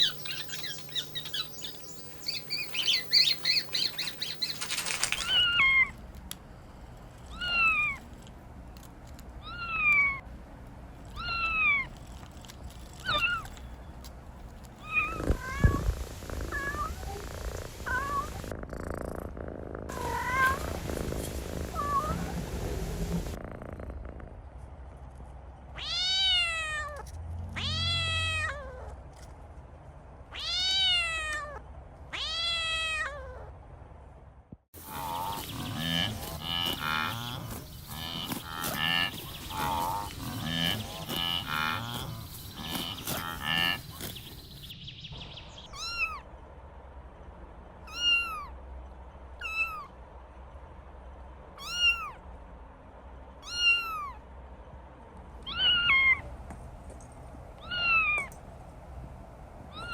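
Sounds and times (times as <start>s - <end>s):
kittens meowing: 0.0s - 5.9s, 7.3s - 8.0s, 9.4s - 10.2s, 11.1s - 12.2s, 13.0s - 13.6s, 14.8s - 18.5s, 19.9s - 20.9s, 27.6s - 28.9s, 45.7s - 46.3s, 47.9s - 48.6s, 49.4s - 49.9s, 51.6s - 52.2s, 53.4s - 54.2s, 55.4s - 56.3s, 57.6s - 58.4s, 59.7s - 59.9s.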